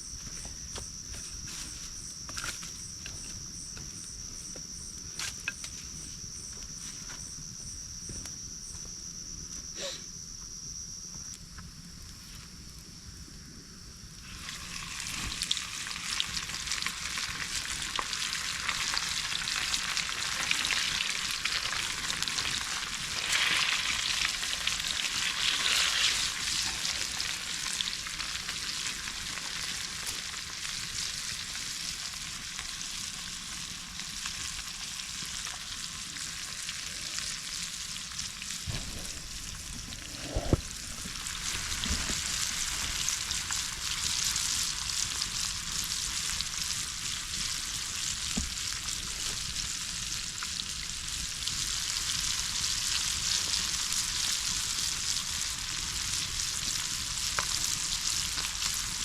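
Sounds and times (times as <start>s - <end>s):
food sizzling in hot oil: 14.2s - 40.0s, 40.6s - 59.0s.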